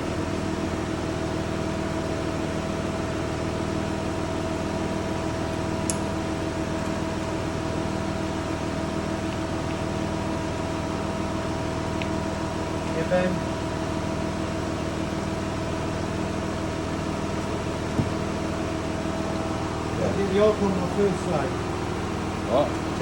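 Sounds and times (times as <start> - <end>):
steady mechanical hum: 0.0 - 23.0.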